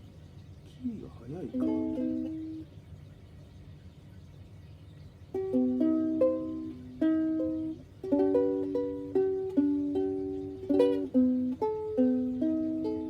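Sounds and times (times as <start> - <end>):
ukulele plucked chords: 0.8 - 2.8, 5.2 - 13.0.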